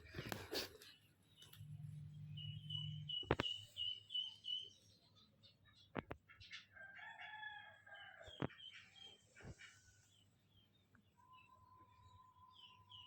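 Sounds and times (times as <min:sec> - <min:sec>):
rooster crowing: 0:06.8 - 0:08.3.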